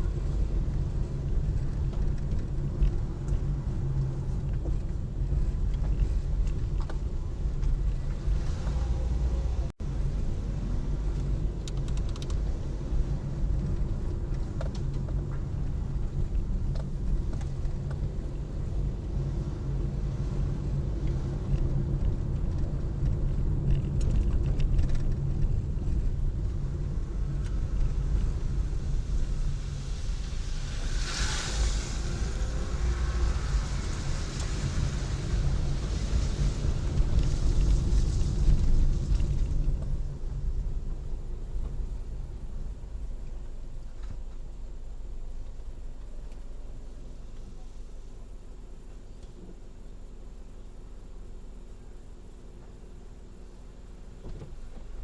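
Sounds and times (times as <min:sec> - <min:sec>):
car engine and road noise: 0:00.0 - 0:55.0
brief rushing hiss: 0:28.9 - 0:38.6.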